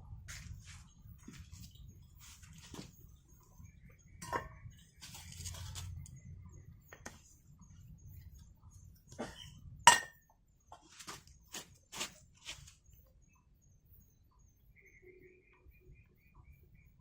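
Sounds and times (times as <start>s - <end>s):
metal cookware clicking and knocking: 4.2s - 4.5s, 9.2s - 10.2s
ringing metallic clink: 9.9s - 10.2s.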